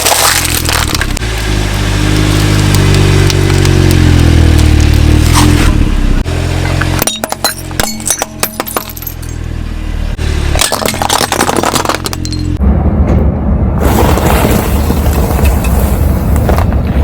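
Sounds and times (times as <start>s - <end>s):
sharp cracks and crunches: 0.0s - 5.7s, 10.5s - 12.2s
car engine running: 0.0s - 13.2s.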